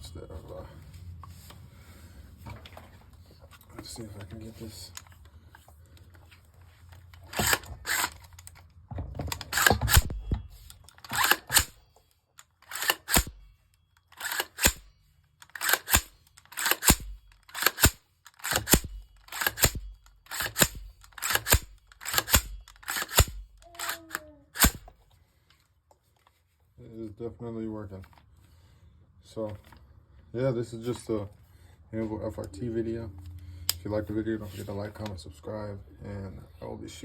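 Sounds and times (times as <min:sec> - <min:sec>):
paired metallic trigger clicks: 0:07.2 - 0:08.6, 0:09.3 - 0:11.8, 0:12.4 - 0:24.9.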